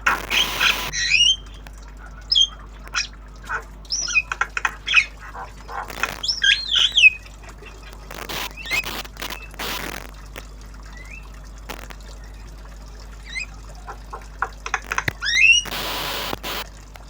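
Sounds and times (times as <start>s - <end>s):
bird harsh squawks: 0.0s - 1.6s, 2.2s - 10.0s, 13.2s - 16.6s
bird whistles and chirps: 0.3s - 1.6s, 3.9s - 5.1s, 6.2s - 7.2s.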